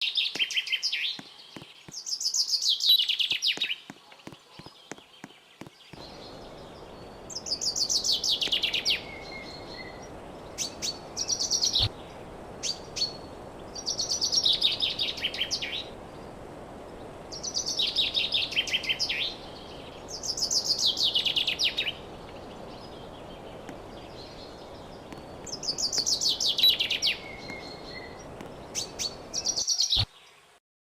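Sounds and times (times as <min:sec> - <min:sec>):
songbird trilling: 0:00.2 - 0:16.4, 0:17.3 - 0:30.1
air conditioner airflow hiss: 0:06.0 - 0:29.6.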